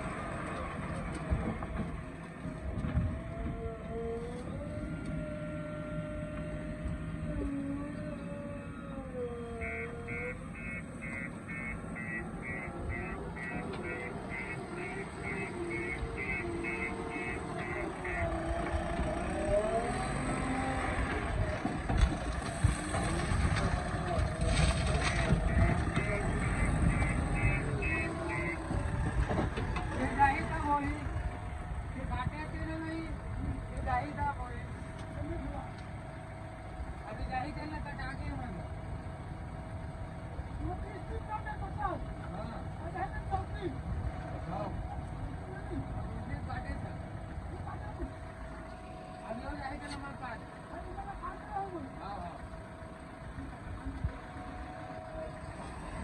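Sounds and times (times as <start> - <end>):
diesel engine rumbling: 0.0 - 56.0.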